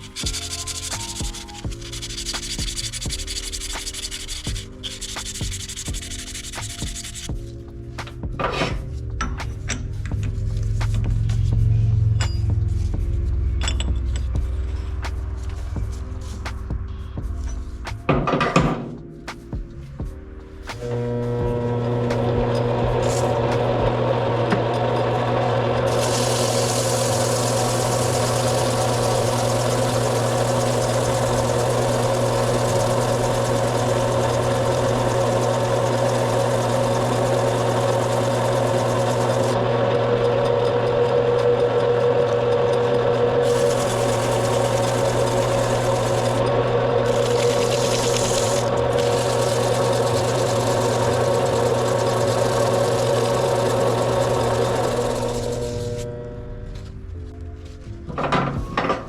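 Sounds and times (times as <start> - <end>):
metal lathe running: 0.0 - 7.4, 20.8 - 56.3
sandpaper hissing: 0.0 - 7.4, 25.9 - 39.6, 43.4 - 46.4, 47.1 - 56.0.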